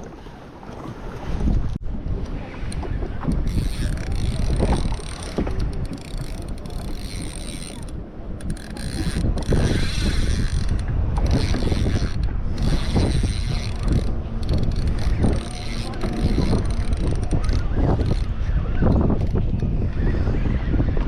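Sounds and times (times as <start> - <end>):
wind buffeting microphone: 0.0 - 21.0
fishing reel whirring and clicking: 3.3 - 19.7.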